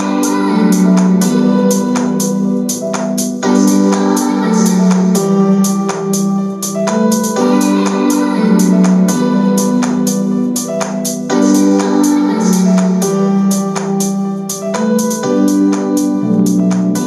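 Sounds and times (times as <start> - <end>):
crisp high percussion beat: 0.0 - 16.1.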